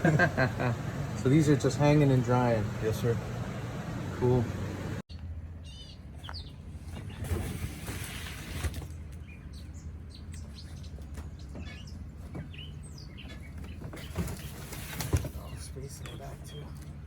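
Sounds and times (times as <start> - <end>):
steady low hum: 0.0 - 6.9
small birds chirping: 0.4 - 7.3, 8.9 - 17.0.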